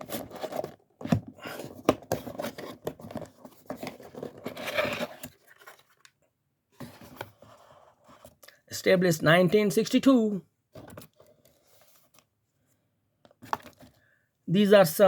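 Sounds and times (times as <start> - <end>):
cardboard crinkling and scraping: 0.0 - 6.2, 6.8 - 8.4, 10.8 - 12.3, 13.3 - 14.0.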